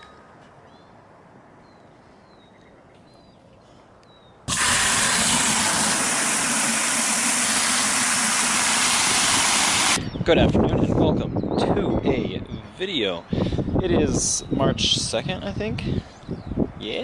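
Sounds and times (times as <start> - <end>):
hose spraying water: 4.5 - 10.0.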